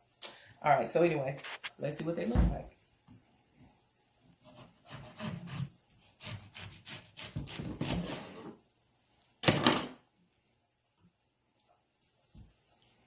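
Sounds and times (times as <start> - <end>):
knife sawing through rind: 4.4 - 8.3.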